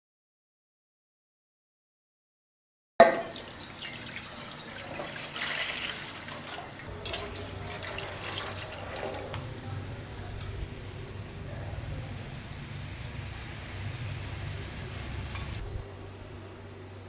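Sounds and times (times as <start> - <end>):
liquid pouring and splashing: 3.0 - 9.4.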